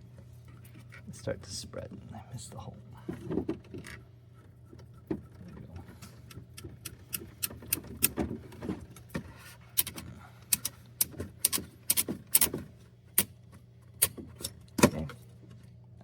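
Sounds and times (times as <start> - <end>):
screwdriver clicks and ticks: 9.8 - 12.5.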